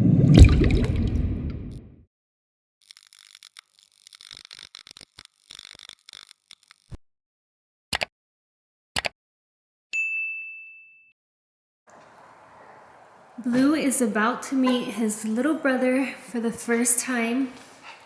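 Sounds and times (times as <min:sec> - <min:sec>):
high bell-like ding: 0:10.0 - 0:11.1
faint crackling: 0:11.9 - 0:18.0.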